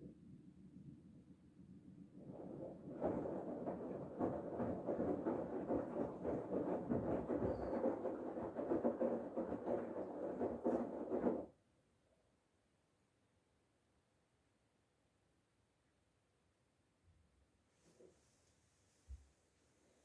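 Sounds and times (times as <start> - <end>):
washing machine drum tumbling laundry: 2.2 - 11.5.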